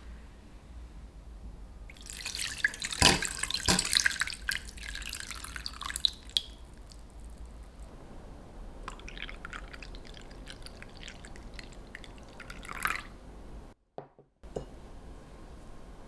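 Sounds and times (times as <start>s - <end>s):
dripping: 1.9s - 7.9s, 8.8s - 13.2s
liquid splashing into container: 1.9s - 7.9s, 8.8s - 13.1s.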